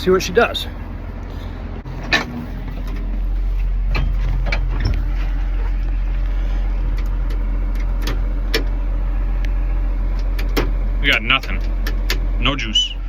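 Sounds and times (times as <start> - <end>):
steady low rumble: 0.0 - 13.0
sharp clicks and knocks: 6.9 - 8.8, 9.4 - 12.3.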